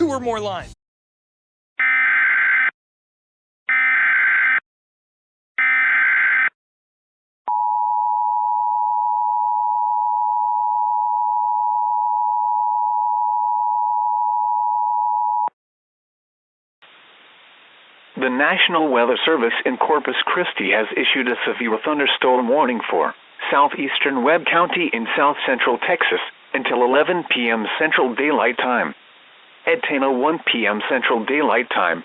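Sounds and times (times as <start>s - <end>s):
two-tone alarm: 1.8s - 2.7s, 3.7s - 4.6s, 5.6s - 6.6s, 7.5s - 15.5s.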